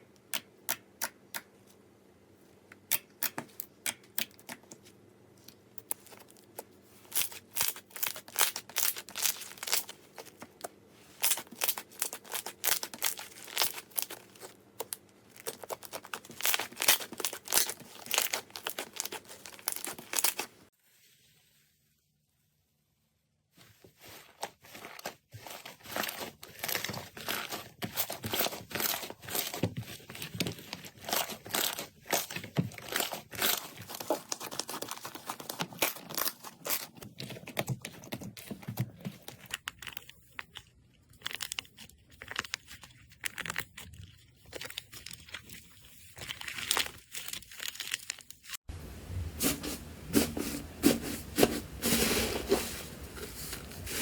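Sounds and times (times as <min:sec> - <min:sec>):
slime crackling and popping: 0:11.2 - 0:20.5.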